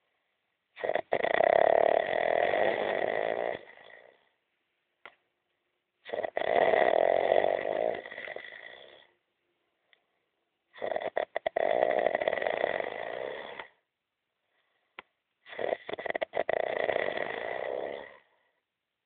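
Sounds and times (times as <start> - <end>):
man snoring heavily: 0.8 - 4.2, 6.1 - 9.1, 10.8 - 13.8, 15.5 - 18.4.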